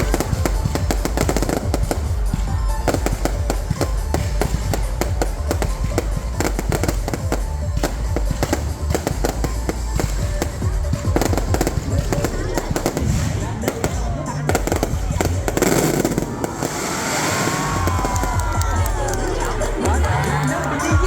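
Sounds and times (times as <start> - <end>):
fireworks deep booms: 0.0 - 20.0
fireworks crackling: 0.0 - 21.0
music: 0.0 - 21.0.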